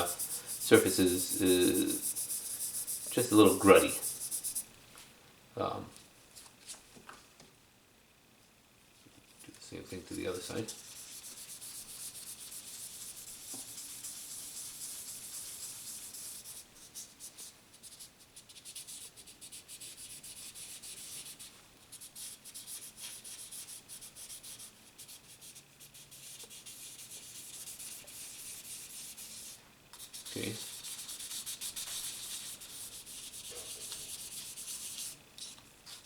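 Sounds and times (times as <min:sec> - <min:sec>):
sandpaper rubbing on knife: 0:00.0 - 0:04.6, 0:10.8 - 0:17.1, 0:26.2 - 0:35.2.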